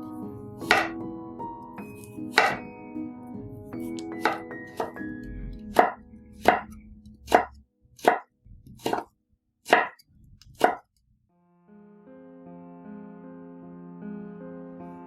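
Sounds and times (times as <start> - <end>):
background music with sustained notes: 0.0 - 9.0, 11.3 - 15.0
knife cutting on a cutting board: 1.9 - 2.6, 5.7 - 9.1, 9.7 - 10.9.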